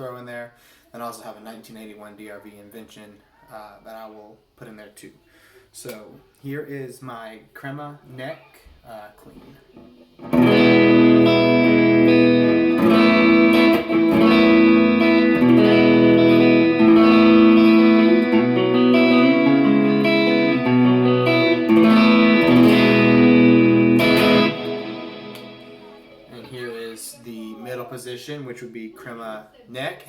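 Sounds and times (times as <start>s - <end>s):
clean electric guitar chords: 10.2s - 27.0s.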